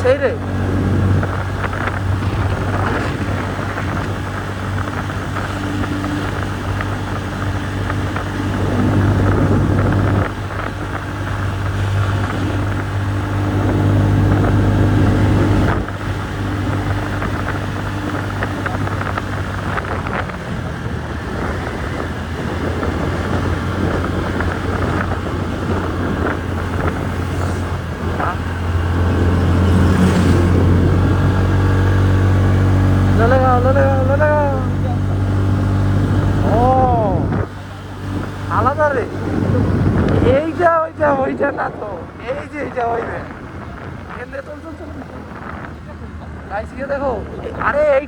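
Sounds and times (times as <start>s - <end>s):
wind on microphone: 0.0s - 46.5s
scooter engine running: 0.0s - 48.0s.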